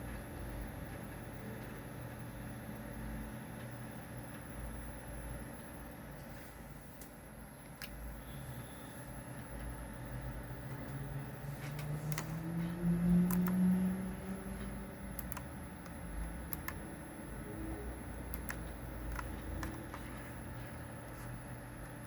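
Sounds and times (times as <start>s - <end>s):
hard drive seek clicks: 9.3s - 17.3s, 17.9s - 22.0s.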